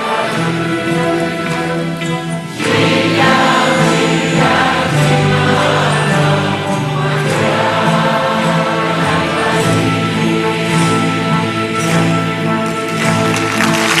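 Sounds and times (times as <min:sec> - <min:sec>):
choir singing held notes: 0:00.0 - 0:14.0
musical accompaniment: 0:00.0 - 0:14.0.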